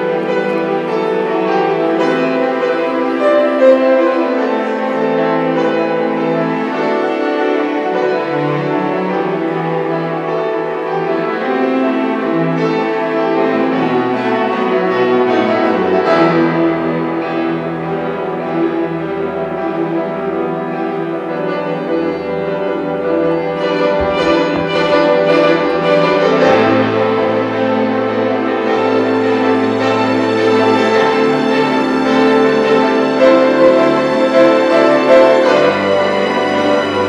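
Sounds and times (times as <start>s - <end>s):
piano with string orchestra: 0.0s - 37.0s.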